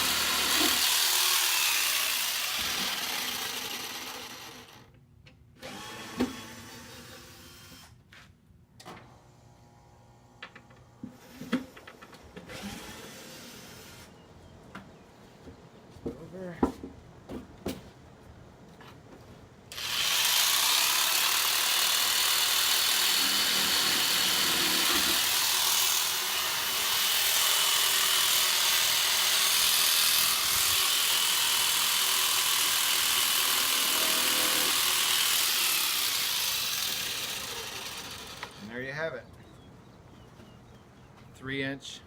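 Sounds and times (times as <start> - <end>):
power saw cutting wood: 0.0 - 4.9, 5.6 - 8.0, 19.7 - 38.7.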